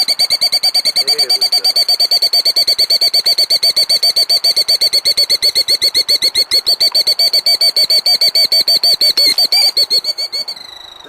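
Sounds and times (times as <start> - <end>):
bird alarm trill: 0.0 - 11.0.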